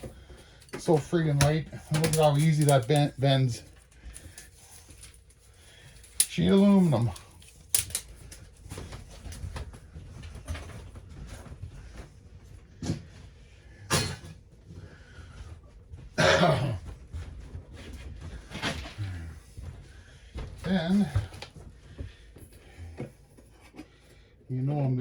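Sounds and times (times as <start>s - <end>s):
sheet aluminum being handled: 0.0s - 9.3s
person coughing: 13.9s - 14.3s, 16.2s - 16.8s.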